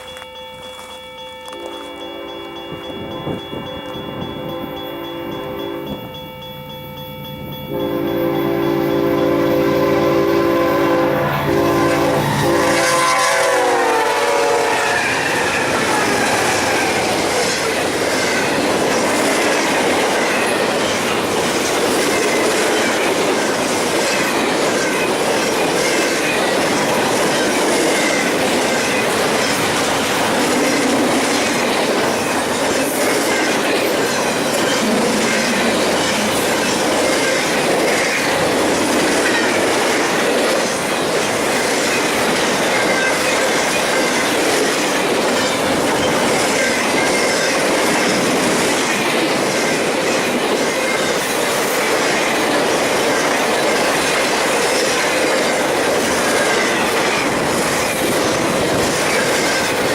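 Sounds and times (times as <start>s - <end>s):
train horn: 7.7s - 17.6s, 34.8s - 37.4s
wheels clacking over rail joints: 11.2s - 59.9s.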